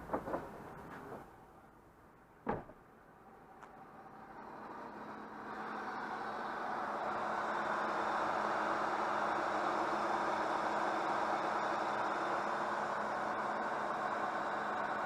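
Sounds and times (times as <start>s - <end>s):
knocks: 2.4s - 2.8s
sharp thump: 2.4s - 2.8s
vehicle running noise: 2.6s - 15.0s.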